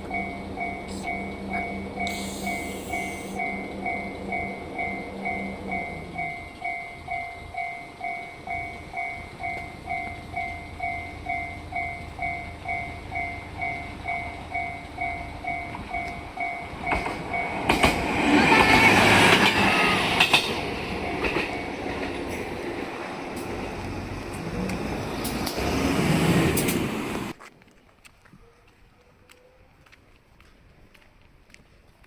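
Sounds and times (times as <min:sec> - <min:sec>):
level-crossing warning bell: 0:00.0 - 0:24.5.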